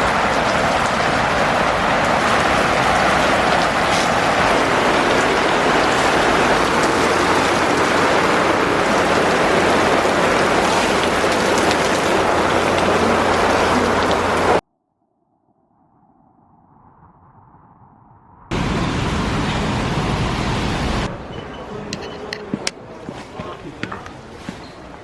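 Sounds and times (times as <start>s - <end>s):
heavy rain pouring: 0.0s - 14.6s, 18.5s - 21.2s.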